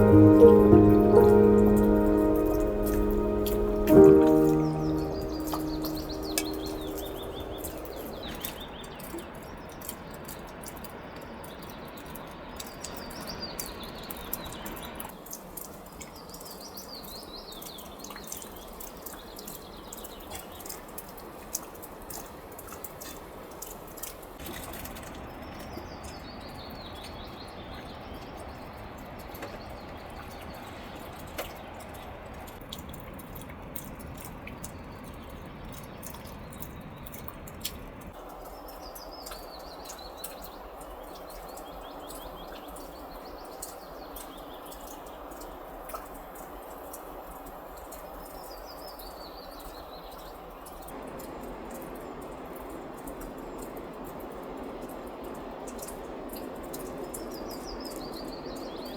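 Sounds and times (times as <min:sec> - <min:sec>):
rain hissing: 0:00.0 - 0:08.3
small birds chirping: 0:00.0 - 0:09.6
water dripping: 0:00.0 - 0:58.9.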